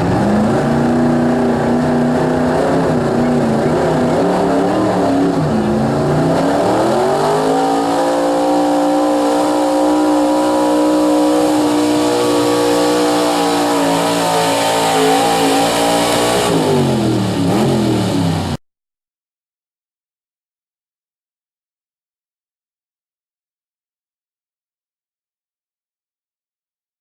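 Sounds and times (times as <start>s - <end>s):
truck engine at full throttle: 0.0s - 18.6s.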